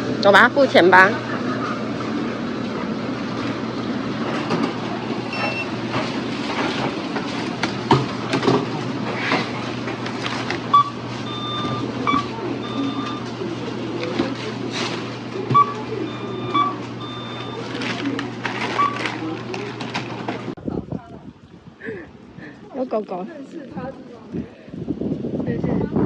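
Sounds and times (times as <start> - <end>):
supermarket bustle: 0.0 - 20.7
short electronic beeps: 5.3 - 5.7, 10.7 - 13.2, 15.5 - 17.6.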